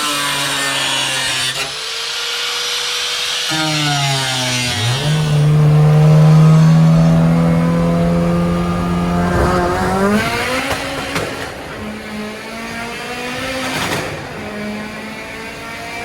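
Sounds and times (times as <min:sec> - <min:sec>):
turbocharged car engine revving: 0:03.5 - 0:16.0.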